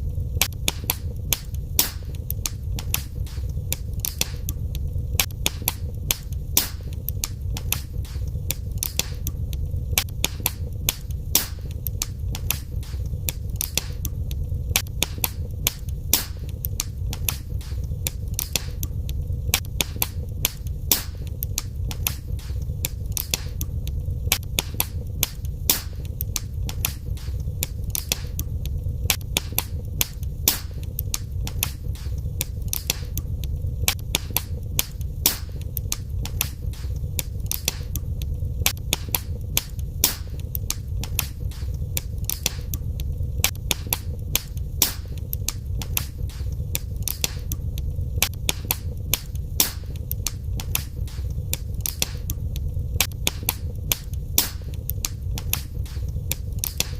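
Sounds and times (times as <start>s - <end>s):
fire crackling and popping: 0.0s - 56.9s
fire rumbling: 0.0s - 56.9s.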